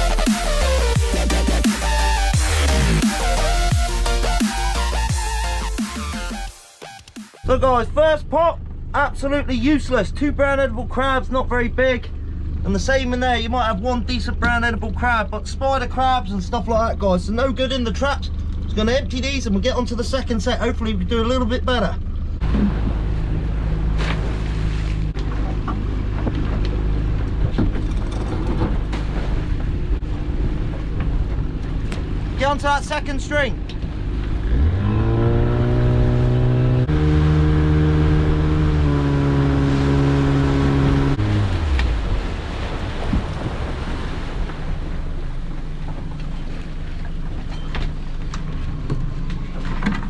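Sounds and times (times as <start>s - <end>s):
boat engine running: 7.4s - 50.0s
water rushing past hull: 22.4s - 26.1s, 28.4s - 47.3s.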